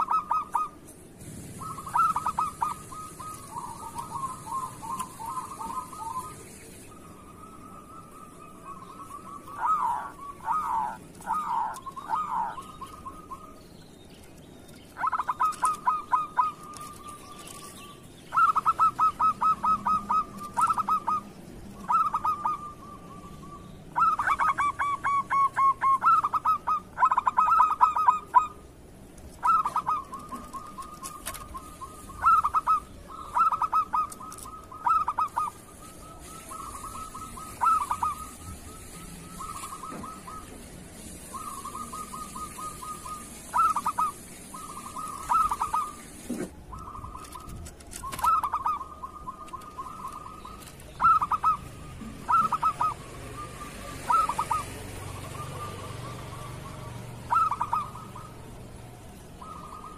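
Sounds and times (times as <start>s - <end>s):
doves staccato cooing: 0.0s - 13.6s, 14.9s - 23.3s, 23.9s - 59.9s
soft long dove coos: 0.0s - 13.6s, 29.4s - 59.9s.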